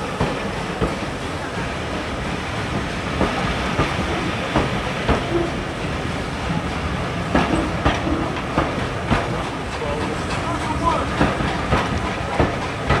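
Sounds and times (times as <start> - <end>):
train rumbling: 0.0 - 13.0
wheels clicking over rail joints: 2.7 - 13.0.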